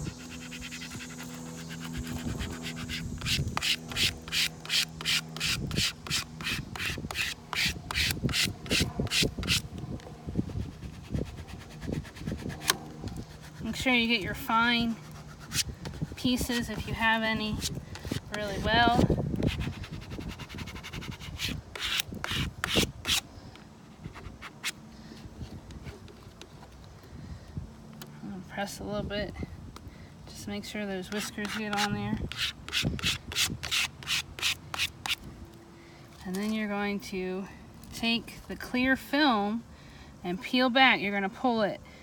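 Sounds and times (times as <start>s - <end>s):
plastic card scratching on glass: 0.0s - 9.6s, 10.6s - 14.0s, 14.9s - 23.2s, 31.1s - 35.2s.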